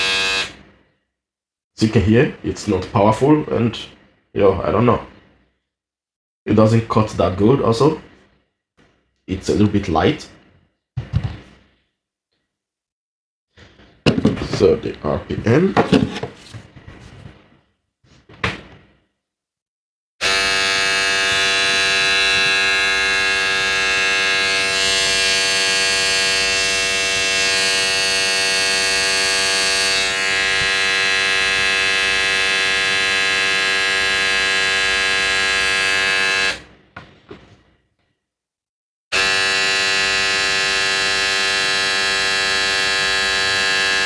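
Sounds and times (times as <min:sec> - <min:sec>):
electric shaver buzzing: 0:00.0 - 0:00.6, 0:20.2 - 0:36.7, 0:39.1 - 0:44.0.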